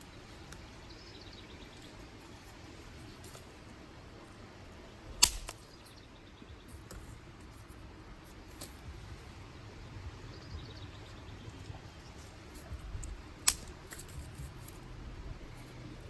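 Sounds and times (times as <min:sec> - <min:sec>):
dry stick snapping: 0:05.2 - 0:05.8, 0:12.6 - 0:14.8.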